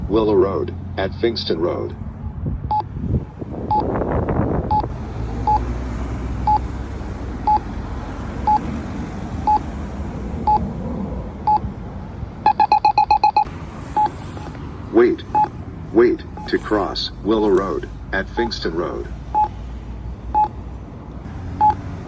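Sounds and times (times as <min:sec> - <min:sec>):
pedestrian signal beeps: 0:04.7 - 0:05.7, 0:06.4 - 0:06.6, 0:07.5 - 0:07.7, 0:08.4 - 0:08.6, 0:09.4 - 0:09.6, 0:12.5 - 0:14.1, 0:15.3 - 0:15.5, 0:16.4 - 0:16.7, 0:18.4 - 0:18.6.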